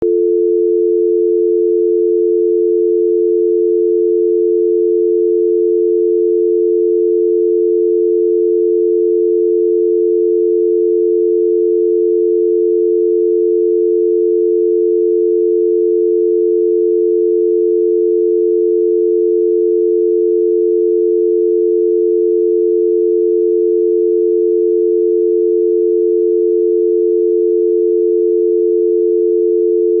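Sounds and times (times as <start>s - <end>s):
telephone dial tone: 0.0s - 30.0s.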